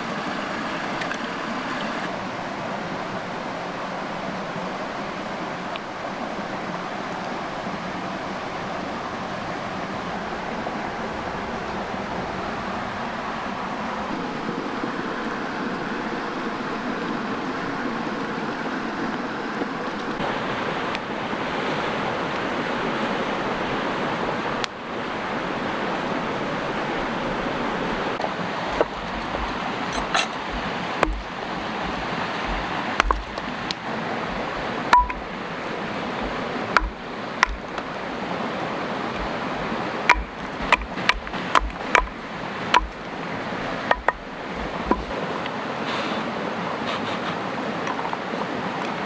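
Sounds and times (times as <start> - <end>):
creek water rushing: 0.0 - 49.0
sharp clicks and pops: 28.7 - 35.3, 36.2 - 37.9, 40.1 - 43.1, 43.9 - 45.1.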